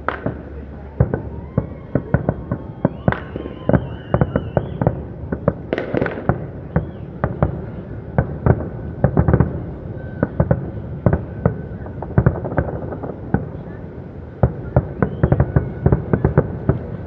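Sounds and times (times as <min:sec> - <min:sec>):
firework whistling: 0:00.0 - 0:07.3, 0:14.4 - 0:17.0
fireworks bangs and pops: 0:00.0 - 0:17.0.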